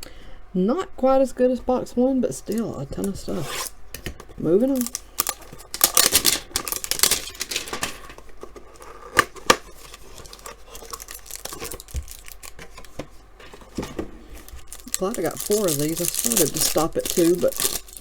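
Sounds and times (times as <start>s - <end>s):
packaging handling: 2.4s - 18.0s
packaging being torn open: 4.7s - 8.0s, 8.8s - 12.9s, 14.4s - 18.0s.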